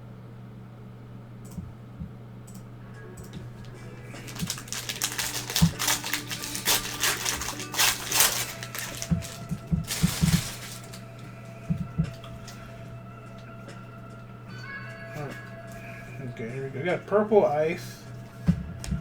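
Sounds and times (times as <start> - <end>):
cards knocking dully: 4.2 - 11.0
foil wrapper tearing and crinkling: 4.2 - 11.1.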